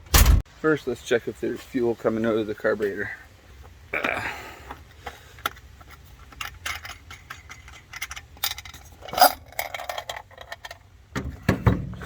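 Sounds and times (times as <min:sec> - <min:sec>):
heavy low thump: 0:00.0 - 0:00.4
metal clinks and rattles: 0:05.4 - 0:10.9.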